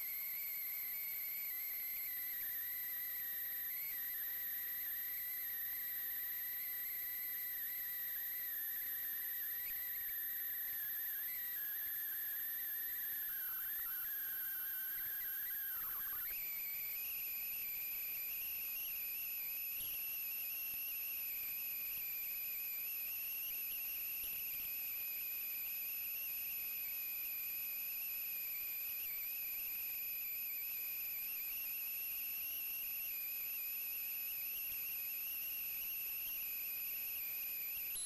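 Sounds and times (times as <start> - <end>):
high-pitched whistling tone: 2.4 - 17.1.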